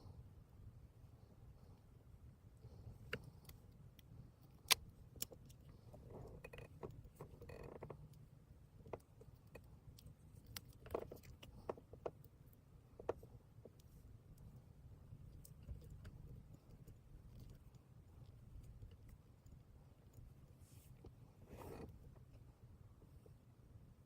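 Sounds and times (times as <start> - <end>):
faint low hum: 0.0 - 24.0
soft rustles: 20.1 - 22.4.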